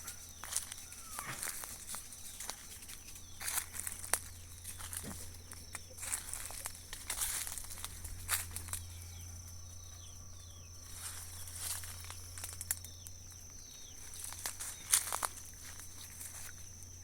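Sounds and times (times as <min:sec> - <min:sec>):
high-pitched insect drone: 0:00.0 - 0:17.0
small birds chirping: 0:00.0 - 0:17.0.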